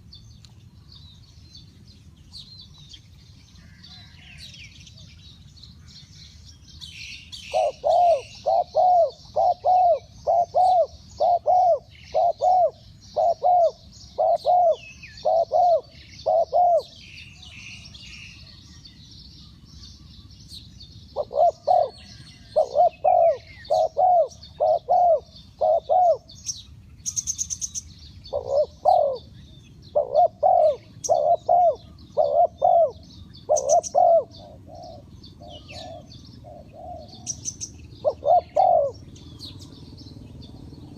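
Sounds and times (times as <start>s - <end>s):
small birds chirping: 0.0s - 40.9s
dove cooing: 7.3s - 18.5s, 21.1s - 27.5s, 28.3s - 39.8s.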